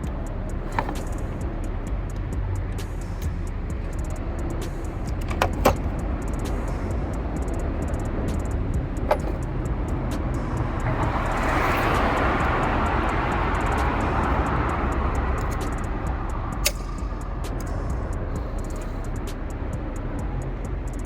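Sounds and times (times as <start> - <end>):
low outdoor rumble: 0.0 - 21.0
vehicle passing: 0.0 - 21.0
light metallic clicks: 2.8 - 10.4, 13.6 - 17.9, 18.6 - 19.3.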